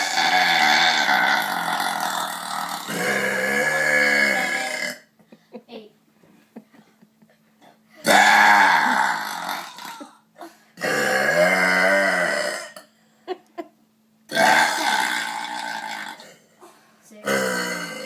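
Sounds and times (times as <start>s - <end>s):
loud human belches: 0.0s - 5.1s, 8.0s - 12.9s, 14.3s - 16.5s, 17.2s - 18.0s.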